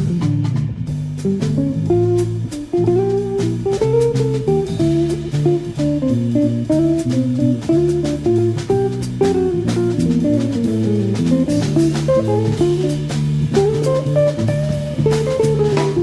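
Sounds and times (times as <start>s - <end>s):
bass guitar: 0.0s - 16.0s
drum kit beat: 0.0s - 16.0s
plucked guitar: 0.0s - 16.0s.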